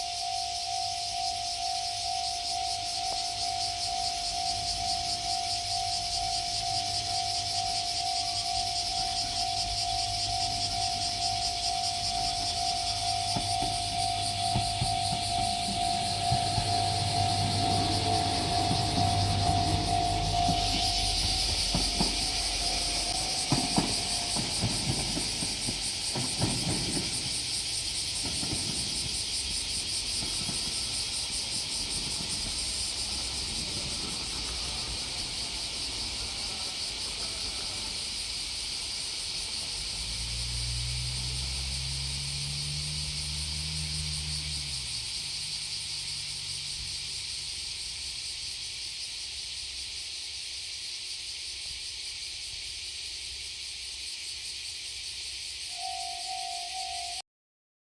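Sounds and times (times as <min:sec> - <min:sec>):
railcar clattering over rails: 0:00.0 - 0:48.5
insects droning: 0:00.0 - 0:57.2
low engine hum: 0:08.6 - 0:26.2, 0:31.2 - 0:47.8.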